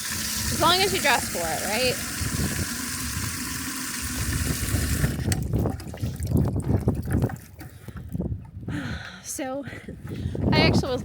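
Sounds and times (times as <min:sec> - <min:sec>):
low wind buffeting rumbles: 0:00.2 - 0:11.0
wind hiss on microphone: 0:00.4 - 0:05.6.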